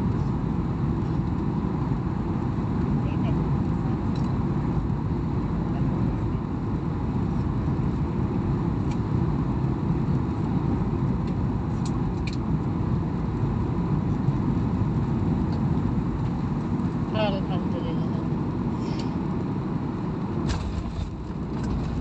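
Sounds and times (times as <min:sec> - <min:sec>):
airliner cabin roar: 0:00.0 - 0:22.0.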